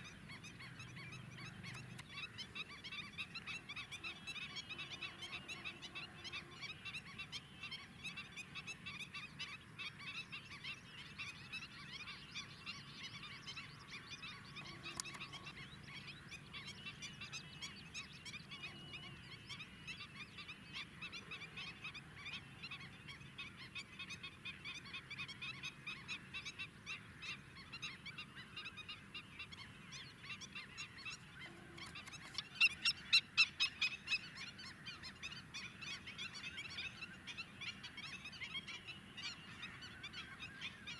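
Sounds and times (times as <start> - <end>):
flamingos honking: 31.2 - 33.5.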